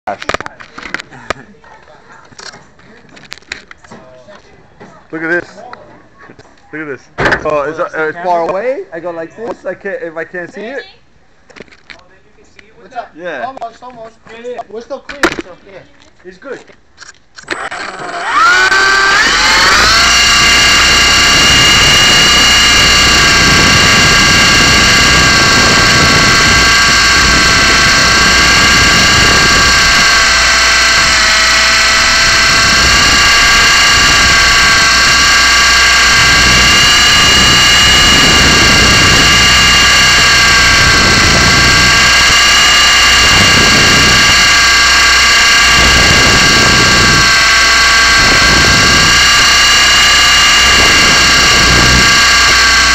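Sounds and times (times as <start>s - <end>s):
model helicopter motor whine: 17.4s - 52.9s.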